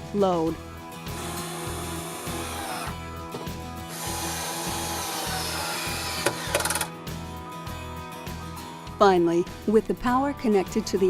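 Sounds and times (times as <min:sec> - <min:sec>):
power drill running: 0:01.1 - 0:03.0, 0:03.9 - 0:06.9
background music with beat: 0:02.9 - 0:09.8.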